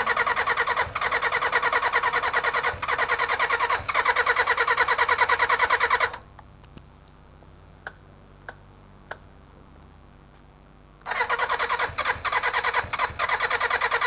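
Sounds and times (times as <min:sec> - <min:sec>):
motorcycle engine cranking: 0:00.0 - 0:06.2, 0:11.1 - 0:14.0.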